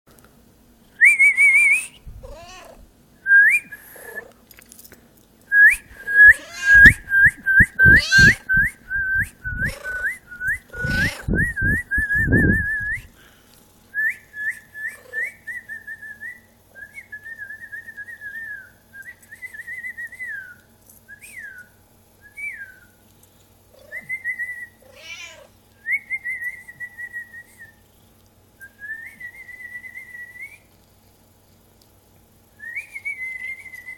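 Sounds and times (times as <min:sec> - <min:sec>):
cat meowing: 0:02.2 - 0:02.8, 0:06.3 - 0:07.0, 0:07.9 - 0:08.4, 0:24.8 - 0:25.5
person whistling bird-like chirps: 0:05.5 - 0:13.1.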